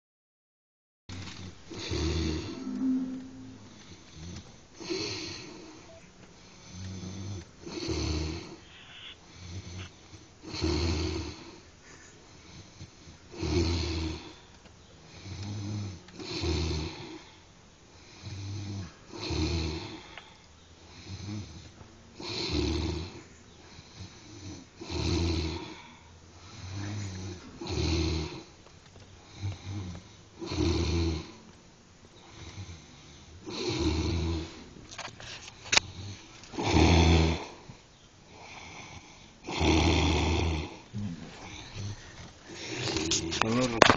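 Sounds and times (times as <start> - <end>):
person snoring: 38.4 - 43.8.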